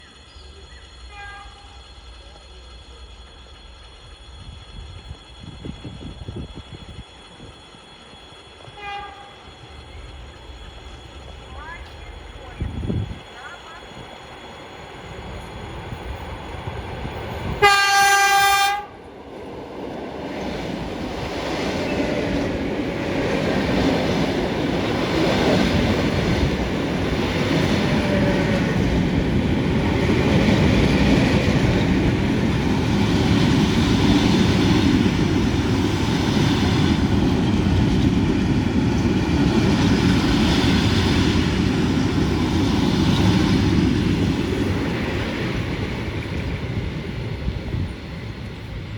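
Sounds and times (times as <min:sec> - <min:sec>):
train wheel-on-rail clatter: 0:00.0 - 0:48.9
train horn: 0:01.1 - 0:01.8, 0:08.7 - 0:09.5, 0:17.6 - 0:19.0.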